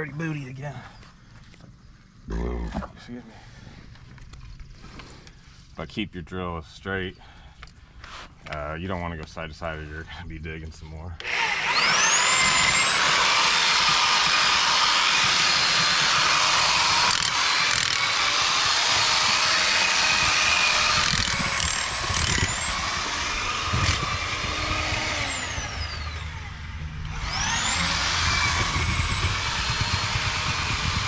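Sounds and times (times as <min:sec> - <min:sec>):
power drill motor whine: 0:11.2 - 0:31.0.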